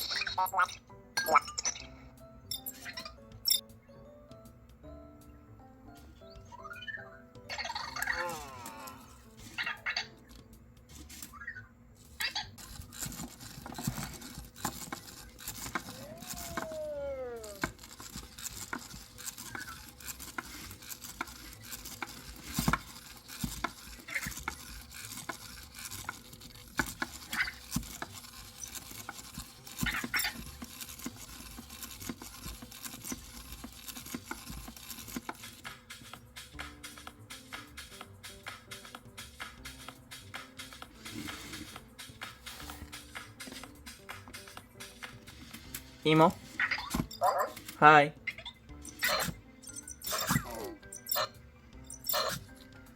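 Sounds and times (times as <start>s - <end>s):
robot toy clicking and tapping: 12.6s - 45.9s.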